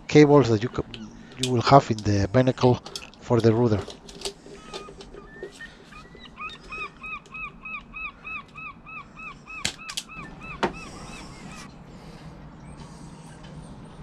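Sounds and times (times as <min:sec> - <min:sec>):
bird calling: 0:03.0 - 0:14.0.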